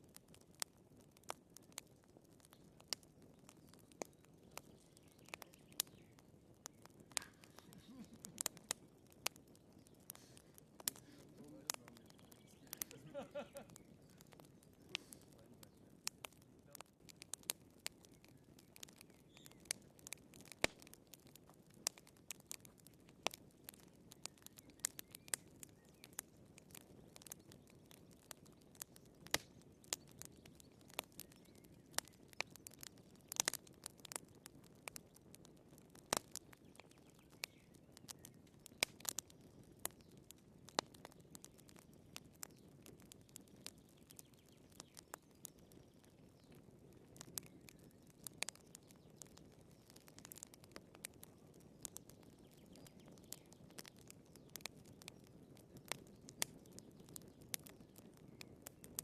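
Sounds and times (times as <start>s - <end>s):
wood fire crackling: 0.0s - 59.0s
hiss of flames: 7.1s - 8.8s, 9.8s - 16.9s.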